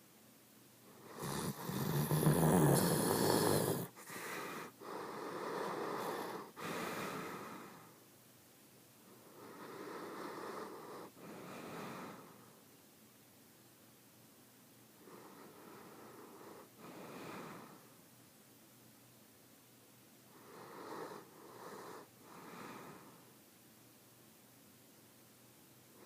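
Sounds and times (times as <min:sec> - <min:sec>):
person snoring: 0:01.0 - 0:07.9, 0:09.3 - 0:12.4.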